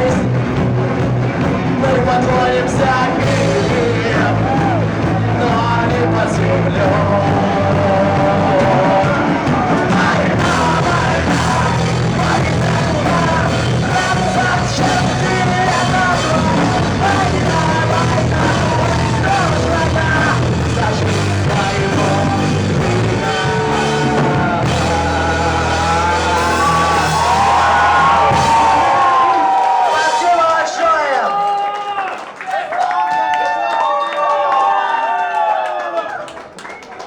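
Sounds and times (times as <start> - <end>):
steady low bass line: 0.0 - 29.3
rock band playing live: 0.0 - 30.5.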